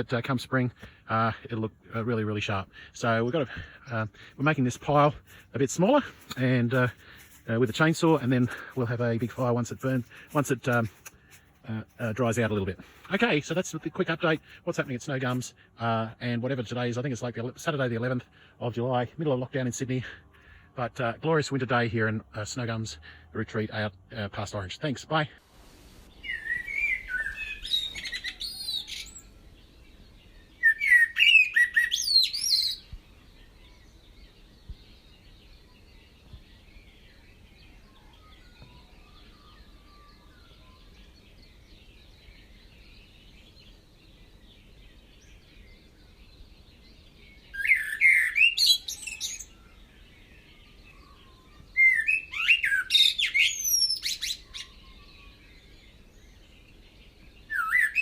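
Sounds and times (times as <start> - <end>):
quiet outdoor background: 0.0 - 58.0
birds warbling: 26.1 - 58.0.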